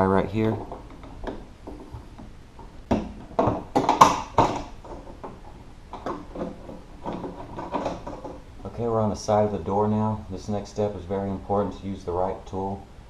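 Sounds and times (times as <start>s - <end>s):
tool prying clicks and knocks: 0.6s - 8.4s.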